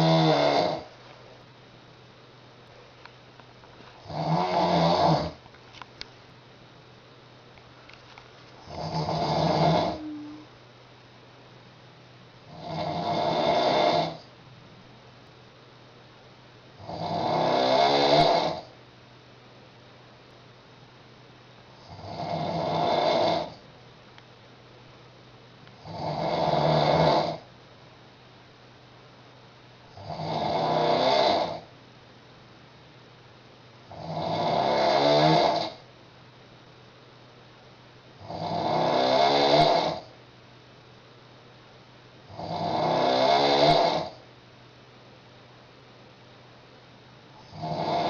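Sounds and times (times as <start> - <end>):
woman snoring loudly: 0.0 - 0.9, 4.0 - 5.4, 8.6 - 10.5, 12.5 - 14.3, 16.8 - 18.7, 21.8 - 23.6, 25.8 - 27.5, 30.0 - 31.7, 33.9 - 35.8, 38.2 - 40.1, 42.3 - 44.2, 47.4 - 48.0.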